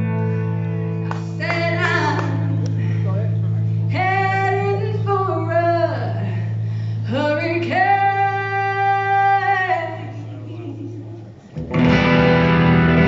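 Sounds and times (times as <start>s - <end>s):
woman singing: 1.3s - 2.5s, 3.9s - 11.2s.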